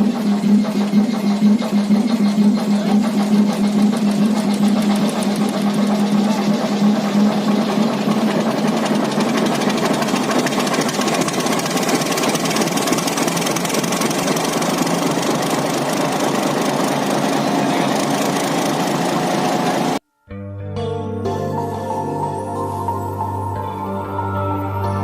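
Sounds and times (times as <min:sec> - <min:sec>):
diesel locomotive engine knocking: 0:00.0 - 0:20.0.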